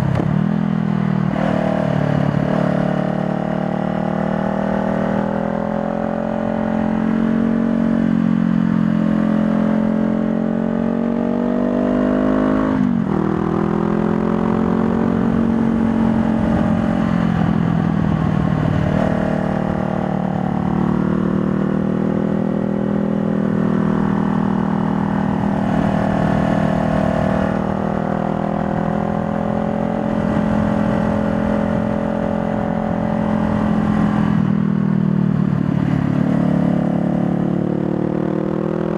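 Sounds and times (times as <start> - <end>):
motorcycle engine running: 12.4 - 38.9.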